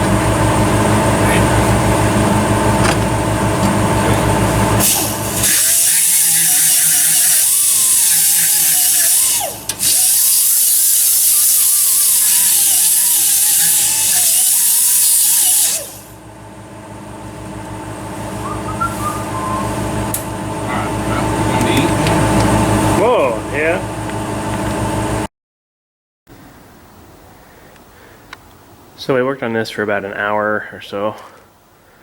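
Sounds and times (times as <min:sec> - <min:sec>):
steady low hum: 0:00.0 - 0:07.0, 0:15.8 - 0:25.3
pneumatic tool hissing and whining: 0:04.8 - 0:16.2.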